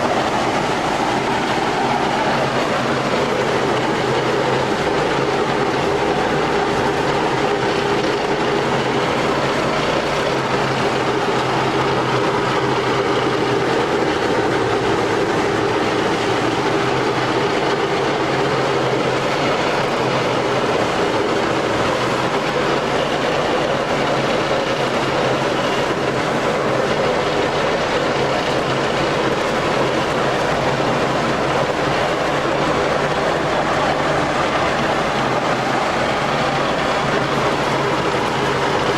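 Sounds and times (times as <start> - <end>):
road roller diesel engine running: 0.0 - 38.9.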